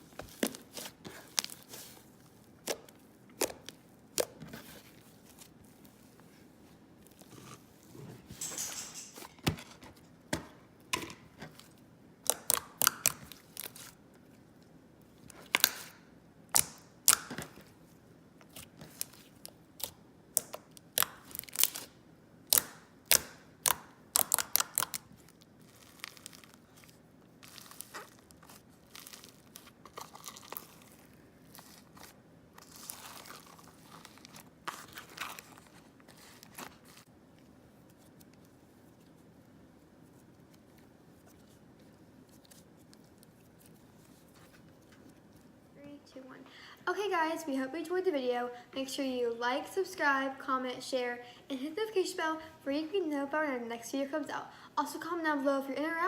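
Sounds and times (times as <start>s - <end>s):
slime squished with clicking pops: 12.2s - 13.8s, 15.4s - 17.6s, 18.4s - 21.9s, 22.5s - 25.1s.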